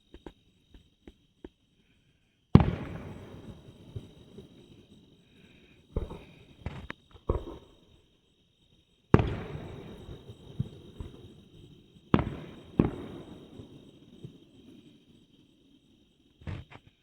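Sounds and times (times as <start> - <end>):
fireworks booming: 2.6 - 4.8, 6.0 - 7.7, 9.2 - 11.4, 12.1 - 14.4.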